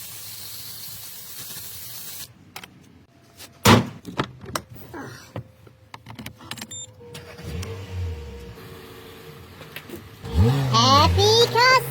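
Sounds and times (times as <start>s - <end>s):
aerosol spray hissing: 0.0s - 2.3s.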